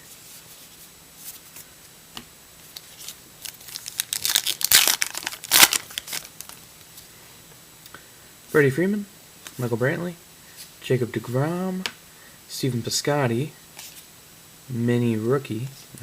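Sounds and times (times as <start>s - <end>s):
wrapper tearing and crinkling: 2.8s - 6.6s.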